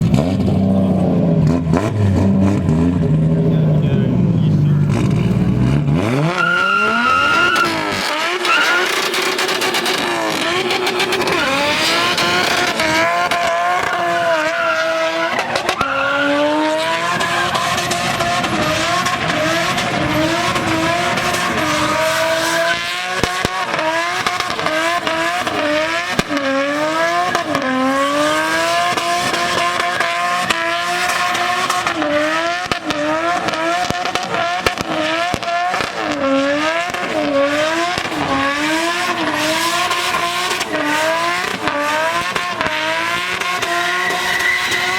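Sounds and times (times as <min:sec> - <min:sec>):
engine revving high: 0:00.0 - 0:44.9
tyres squealing: 0:06.2 - 0:12.7, 0:13.4 - 0:22.8.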